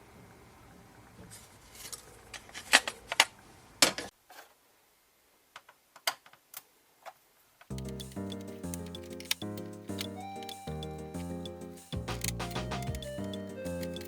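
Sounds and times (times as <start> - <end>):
keyboard plastic clicks and clacks: 7.7 - 14.0
music: 7.7 - 14.0.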